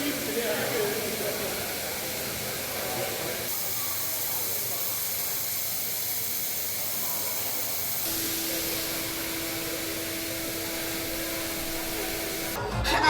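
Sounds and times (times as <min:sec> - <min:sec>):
steady hissing noise: 0:00.0 - 0:12.6
steady low hum: 0:08.0 - 0:12.6.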